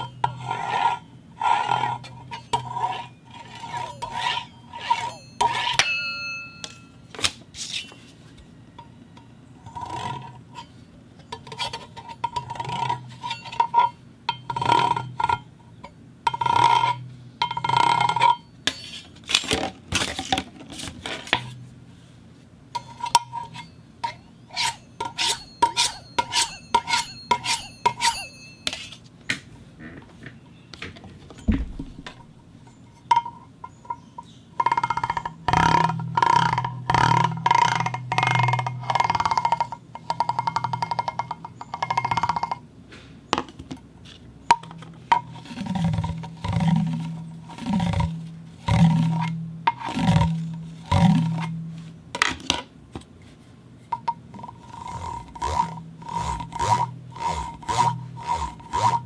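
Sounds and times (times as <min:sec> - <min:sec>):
pipe scraping on metal plate: 0:00.0 - 0:06.2, 0:09.6 - 0:10.8, 0:11.4 - 0:15.5, 0:16.3 - 0:19.2, 0:22.8 - 0:29.0, 0:44.5 - 0:51.8, 0:53.8 - 0:59.0
ringing tone: 0:03.8 - 0:07.1, 0:24.8 - 0:29.0.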